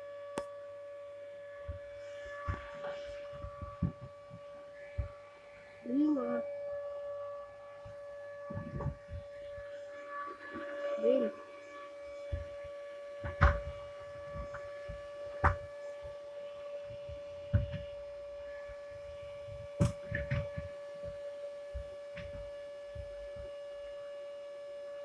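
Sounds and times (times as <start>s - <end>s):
vacuum cleaner whining: 0.0s - 25.0s
sharp knocks and bumps: 2.4s - 4.4s, 8.5s - 9.3s, 13.2s - 15.7s, 16.8s - 18.0s, 19.4s - 21.2s.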